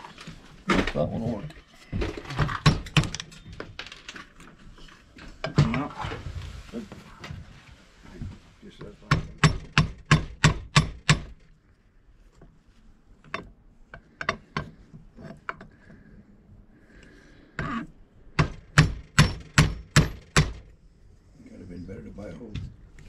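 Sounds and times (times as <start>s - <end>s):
hammer striking metal punch: 9.1s - 11.4s, 18.4s - 20.6s.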